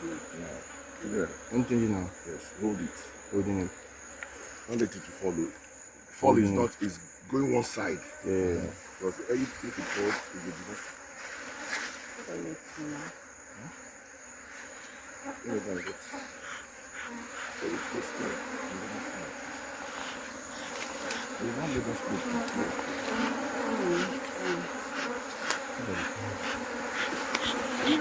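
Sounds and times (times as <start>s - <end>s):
bees buzzing around hive: 0.0s - 28.0s
single bees whizzing past: 15.6s - 28.0s.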